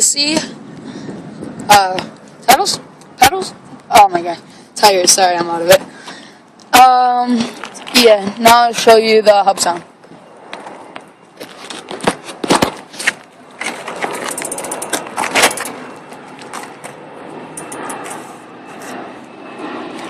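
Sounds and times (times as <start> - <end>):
bicycle hub ticking: 14.1 - 15.8.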